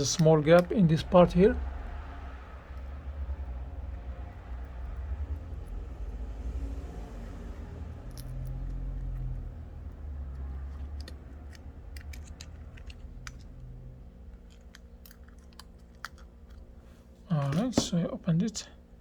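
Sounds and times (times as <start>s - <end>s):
low rumble of handling: 0.0s - 19.0s
screwdriver clicking and scraping: 10.3s - 13.6s.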